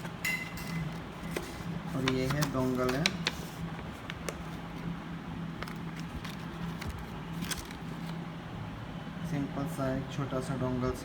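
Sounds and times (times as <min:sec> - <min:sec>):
steady low hum: 0:00.0 - 0:11.0
handling clicks and crackles: 0:05.6 - 0:08.1.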